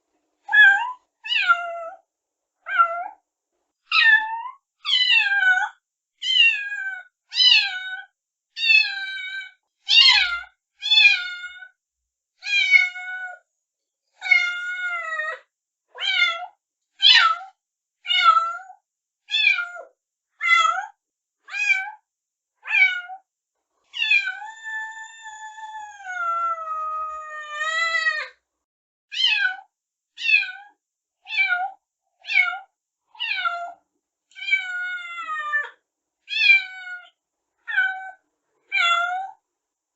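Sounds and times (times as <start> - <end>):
kitten mewing: 24.0 - 28.3.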